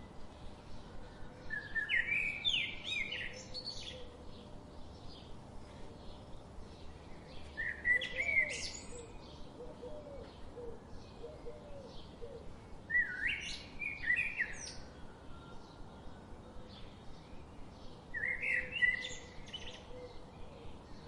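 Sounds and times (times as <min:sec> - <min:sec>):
birds singing complex songs: 0:00.0 - 0:21.0.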